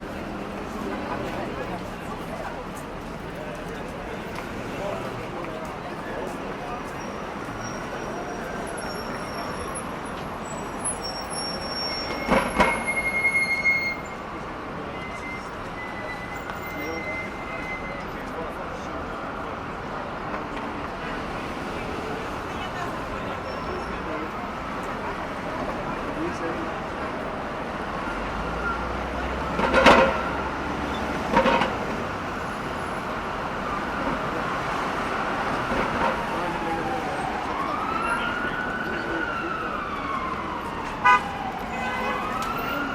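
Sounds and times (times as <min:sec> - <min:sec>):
short loud street sounds: 0:00.0 - 0:42.9
steady traffic noise: 0:00.0 - 0:42.9
vehicle metallic squeal: 0:06.7 - 0:18.4, 0:23.3 - 0:24.2
vehicle clatter: 0:29.4 - 0:32.6.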